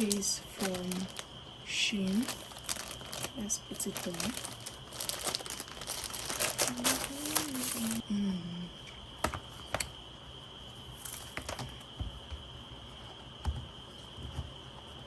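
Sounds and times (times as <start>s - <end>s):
plastic wrapping crinkling: 0.0s - 1.3s, 2.0s - 8.0s.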